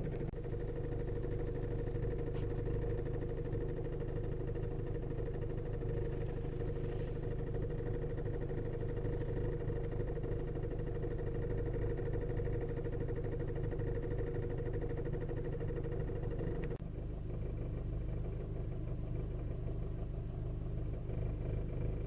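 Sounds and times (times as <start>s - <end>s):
car engine idling: 0.0s - 22.0s.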